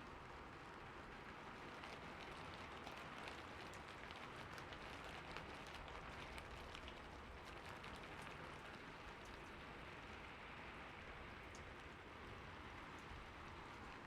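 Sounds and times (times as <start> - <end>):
rain drop ticks: 1.5 - 9.9, 11.4 - 12.0, 12.9 - 14.0.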